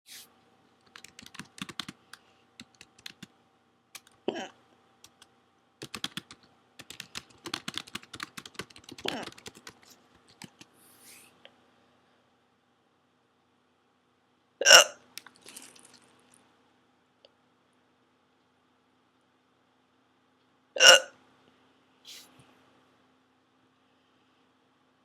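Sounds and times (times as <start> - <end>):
computer keyboard typing: 0.8 - 3.3, 5.0 - 10.7
short hiccups: 4.3 - 4.6, 14.6 - 15.0, 20.8 - 21.1.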